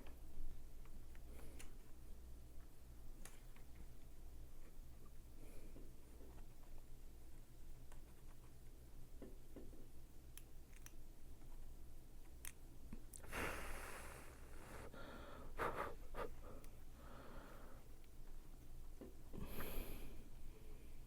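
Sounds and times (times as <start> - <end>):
person breathing out: 13.2 - 17.8.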